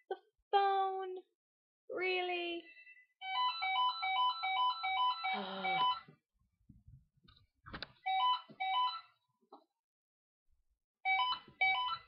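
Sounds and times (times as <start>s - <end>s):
telephone ringtone beeping: 3.2s - 6.1s, 8.1s - 9.2s, 11.1s - 12.0s.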